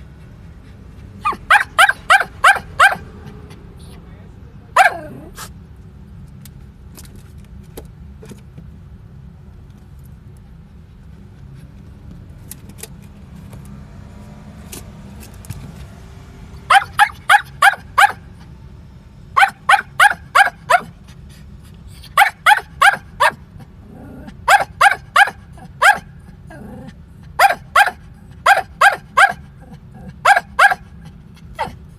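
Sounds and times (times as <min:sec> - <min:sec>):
small dog barking high yaps: 0:01.2 - 0:03.1, 0:16.7 - 0:18.3, 0:19.4 - 0:21.0, 0:22.1 - 0:23.4, 0:24.5 - 0:26.1, 0:27.4 - 0:29.4, 0:30.2 - 0:30.9.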